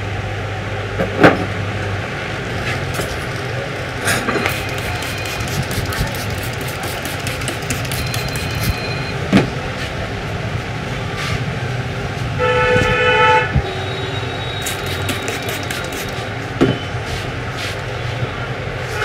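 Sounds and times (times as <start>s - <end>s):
street background noise: 0.0s - 19.0s
vehicle horn: 12.4s - 15.2s.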